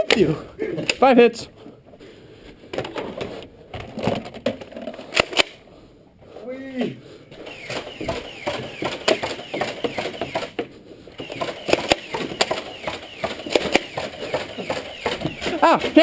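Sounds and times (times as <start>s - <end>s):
toy blasters clicking and firing: 7.4s - 10.6s, 11.2s - 16.0s.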